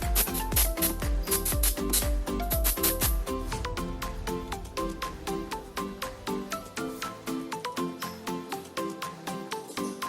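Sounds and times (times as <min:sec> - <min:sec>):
music with plucked melody and beat: 0:00.0 - 0:10.0.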